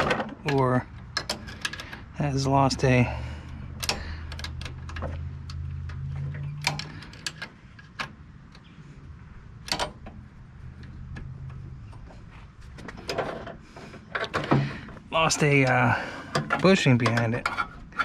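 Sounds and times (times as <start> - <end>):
metallic clicks of hand wrenches: 0.0 - 2.2, 3.5 - 8.7, 15.2 - 18.0.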